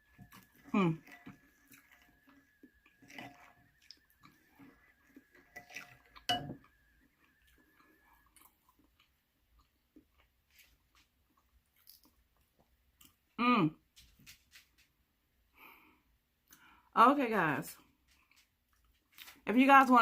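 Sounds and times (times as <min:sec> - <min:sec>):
chewing and lip smacking: 0:00.0 - 0:13.2.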